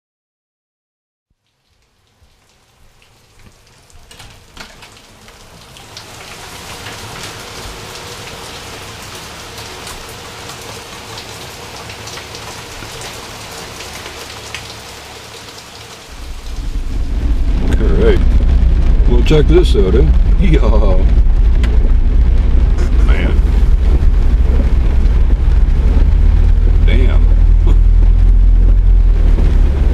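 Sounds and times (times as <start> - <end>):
heavy rain falling: 1.4 - 29.9
loud low rumble: 16.1 - 29.9.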